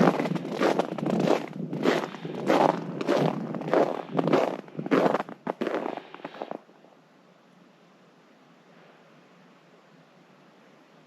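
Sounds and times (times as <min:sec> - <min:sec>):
footsteps crunching through frozen snow: 0:00.0 - 0:06.6.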